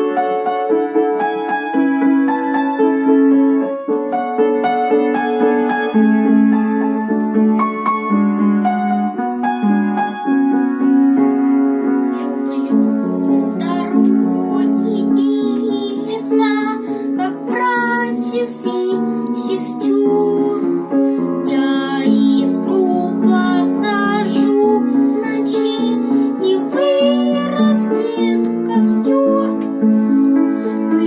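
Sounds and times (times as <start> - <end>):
piano accompaniment: 0.0 - 31.0
boy singing: 12.1 - 29.7.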